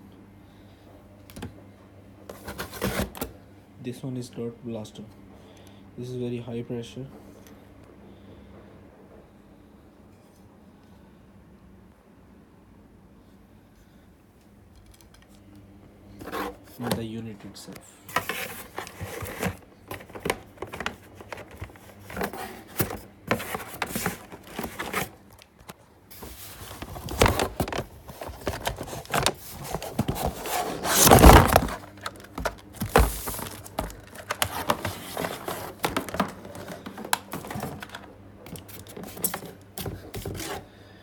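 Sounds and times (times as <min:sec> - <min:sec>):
plastic wrap and cardboard crinkling: 0:18.1 - 0:40.6.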